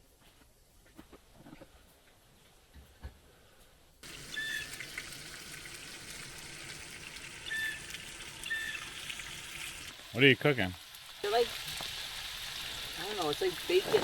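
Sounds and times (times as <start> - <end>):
bacon sizzling in a frying pan: 4.0 - 14.0.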